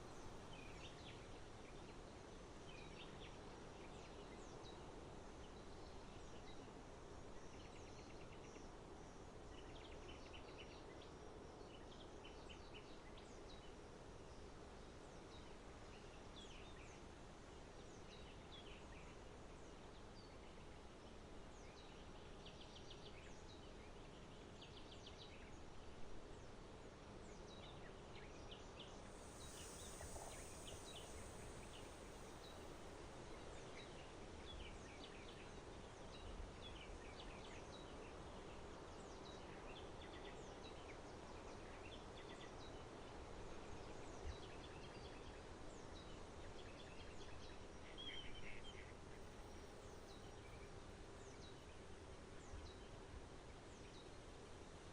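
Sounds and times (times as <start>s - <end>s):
songbirds chirping: 27.2s - 38.1s
brief high hiss: 29.0s - 33.2s.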